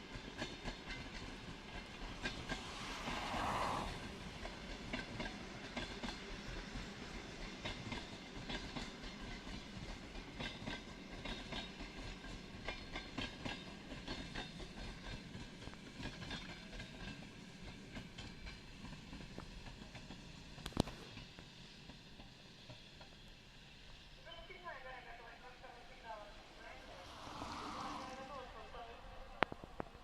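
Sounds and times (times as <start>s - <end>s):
train wheels clattering over rail joints: 0.0s - 3.4s, 4.0s - 23.2s
train rumble: 0.0s - 30.0s
rushing noise: 2.4s - 4.2s.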